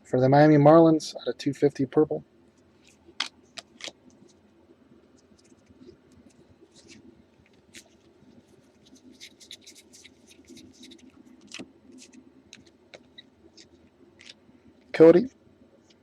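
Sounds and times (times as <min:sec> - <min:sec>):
cards scratching and clicking: 0:02.8 - 0:04.4, 0:05.2 - 0:14.4.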